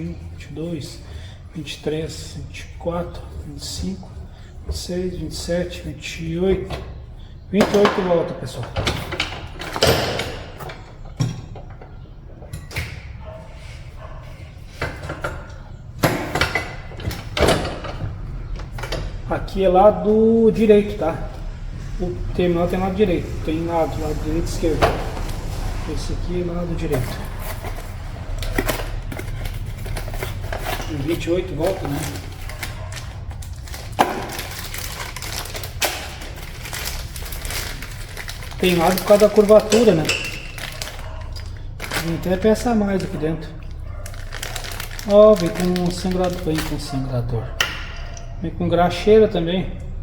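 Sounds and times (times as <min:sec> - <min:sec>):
steady low hum: 0:10.2 - 0:39.7
metal tools clicking and knocking: 0:37.7 - 0:42.0.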